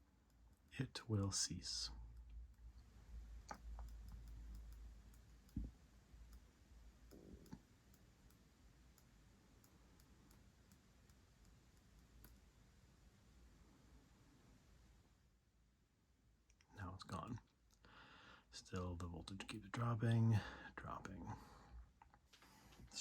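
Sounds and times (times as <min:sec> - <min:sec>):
faint oscillating clicking: 0:00.0 - 0:14.0.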